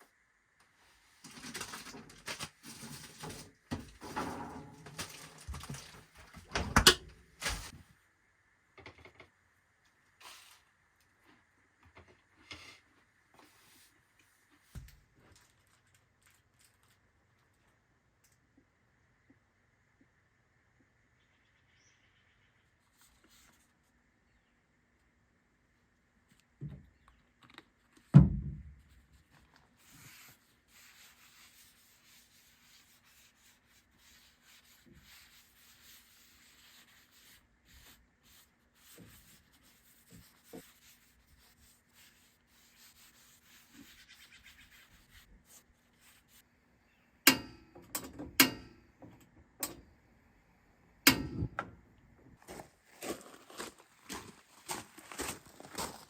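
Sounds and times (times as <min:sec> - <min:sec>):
faint rubbing: 0:29.1 - 0:46.4.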